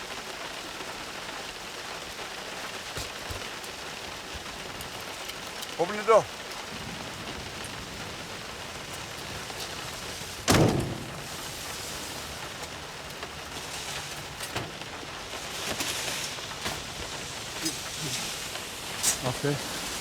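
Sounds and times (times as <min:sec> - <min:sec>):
steady background hiss: 0:00.0 - 0:20.0
heavy thump: 0:10.4 - 0:12.7.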